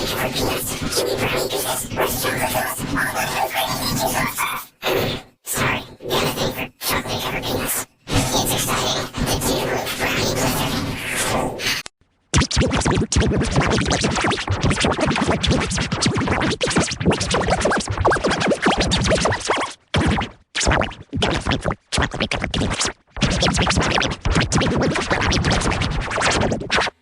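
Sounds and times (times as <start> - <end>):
glitchy electronic stuttering chops: 0.0 - 19.3.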